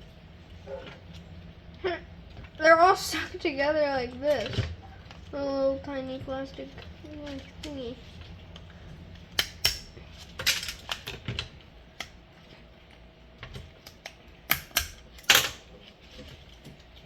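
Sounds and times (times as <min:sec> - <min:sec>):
plastic parts clicking: 0:13.4 - 0:15.7.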